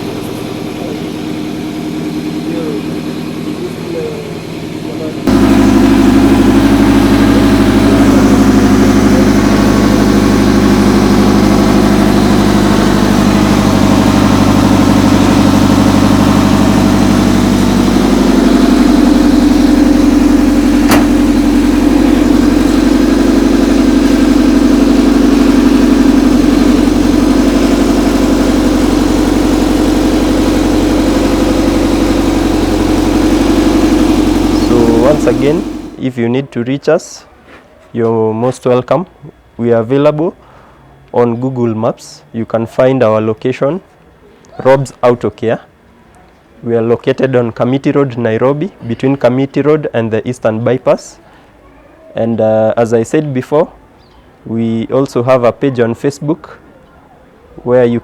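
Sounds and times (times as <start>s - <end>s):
car engine idling: 0.0s - 36.1s.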